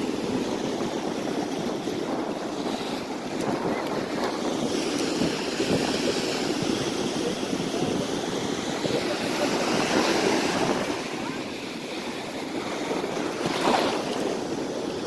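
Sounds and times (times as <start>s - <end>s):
ocean surf washing: 0.0s - 15.0s
wind buffeting microphone: 0.0s - 15.0s.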